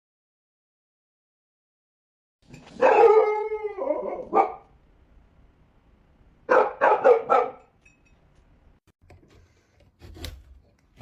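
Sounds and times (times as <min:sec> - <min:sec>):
dog barking: 0:02.7 - 0:04.7, 0:06.5 - 0:07.7.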